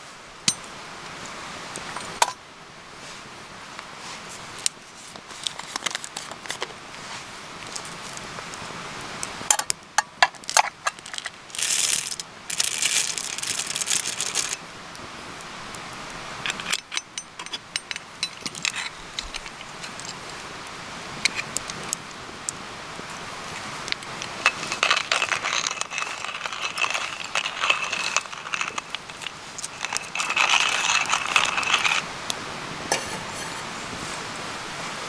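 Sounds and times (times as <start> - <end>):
campfire crackling and popping: 7.6 - 16.8, 18.0 - 32.9
fire hissing: 10.5 - 34.7.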